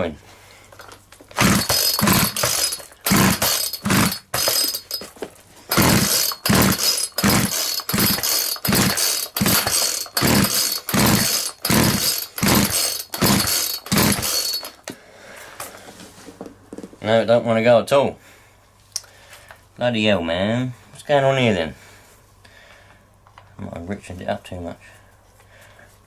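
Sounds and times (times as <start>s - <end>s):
chainsaw being pull-started: 0.8s - 14.9s.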